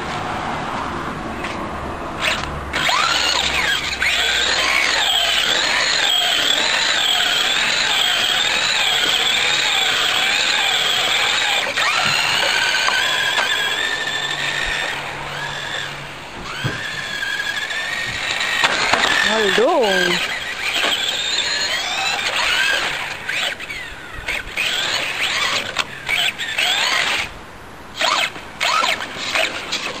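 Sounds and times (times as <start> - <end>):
toy car motor whining: 2.2 - 27.3, 27.9 - 30.0.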